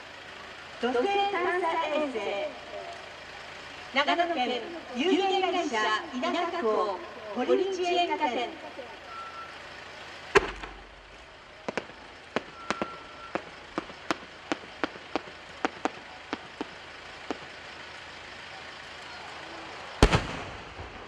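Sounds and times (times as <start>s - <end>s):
firework mortar thump: 10.4s - 17.5s, 20.0s - 21.0s
firework shell bursting boom: 10.4s - 17.5s, 20.0s - 21.0s
firework sharp cracks: 10.4s - 18.5s, 19.9s - 21.0s.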